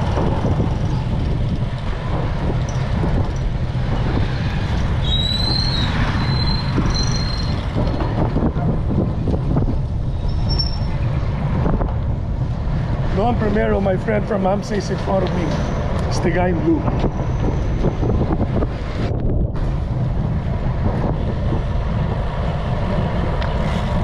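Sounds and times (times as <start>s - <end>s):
wind buffeting microphone: 0.0s - 24.0s
high-pitched squeal: 4.2s - 8.1s, 10.1s - 11.1s.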